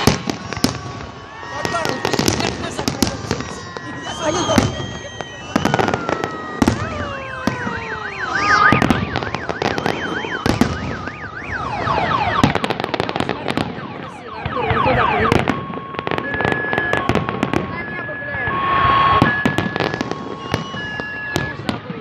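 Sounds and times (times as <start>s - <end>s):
fireworks bangs and crackling: 0.0s - 22.0s
whistling shells: 3.3s - 11.5s, 15.4s - 21.6s
warbling alarm tone: 3.5s - 21.5s.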